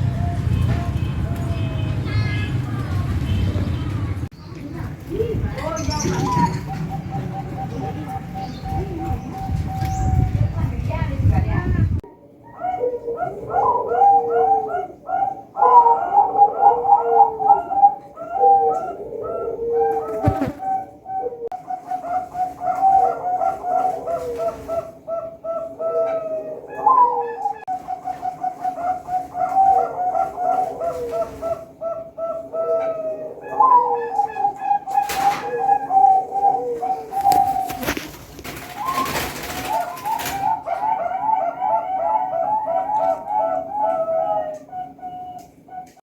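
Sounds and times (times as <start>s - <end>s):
caged birds calling: 0.0s - 46.0s
bird calling short repeated notes: 20.0s - 20.9s.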